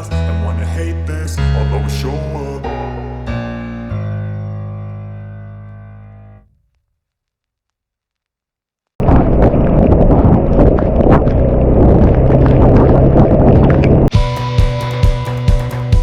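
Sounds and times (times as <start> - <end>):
music: 0.0 - 6.4, 14.1 - 16.0
crackling hits: 9.0 - 12.0
wind buffeting: 9.0 - 14.6
motorcycle engine: 10.8 - 16.0.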